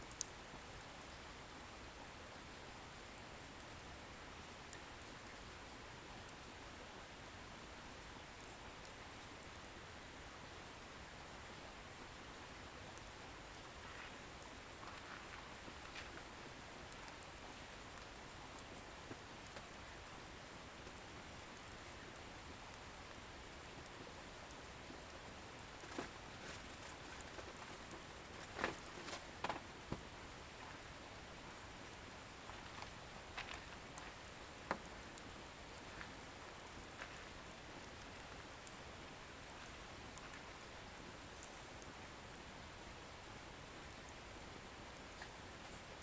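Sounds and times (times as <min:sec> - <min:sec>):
fire crackles and pops: 0:00.0 - 0:01.0, 0:11.6 - 0:46.0
bonfire hissing: 0:13.0 - 0:30.8, 0:40.8 - 0:44.2.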